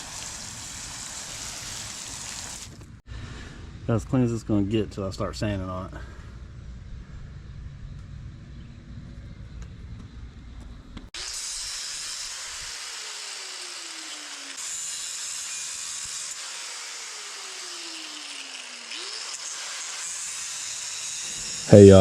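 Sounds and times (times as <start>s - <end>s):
power sander on metal: 11.2s - 22.0s.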